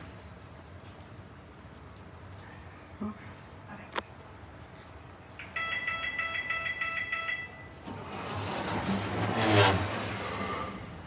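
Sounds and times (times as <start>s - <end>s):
lift short beeps: 5.4s - 7.8s.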